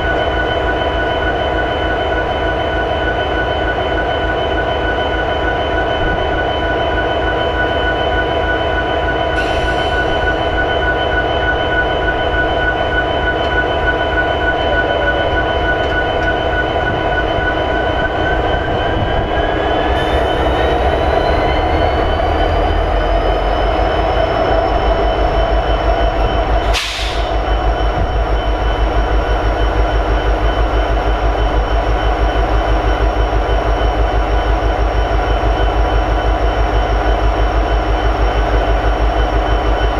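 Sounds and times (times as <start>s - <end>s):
diesel locomotive idling: 0.0s - 39.9s
rising whine: 9.4s - 35.4s.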